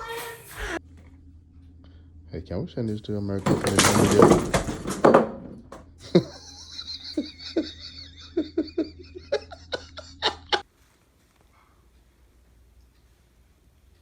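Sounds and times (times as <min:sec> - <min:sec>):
steady low hum: 0:00.0 - 0:04.0
person laughing in short bursts: 0:06.1 - 0:10.6.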